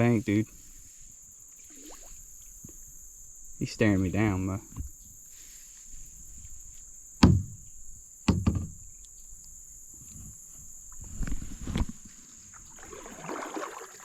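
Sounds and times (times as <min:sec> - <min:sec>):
soft bumping: 0:07.2 - 0:07.7, 0:08.3 - 0:08.8
knocks against kayak hull: 0:07.2 - 0:08.8.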